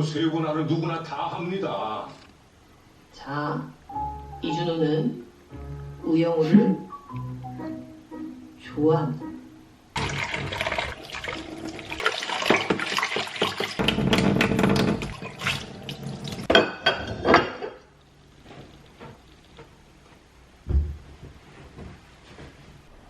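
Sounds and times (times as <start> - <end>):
tap water running into sink: 10.0 - 16.5
dishes clinking: 16.3 - 17.8
dull thump: 20.6 - 21.9.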